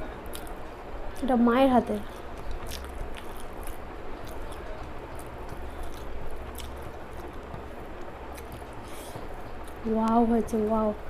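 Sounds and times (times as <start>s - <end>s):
low steady hum: 0.0s - 11.0s
person chewing food: 0.2s - 1.3s, 2.1s - 9.8s.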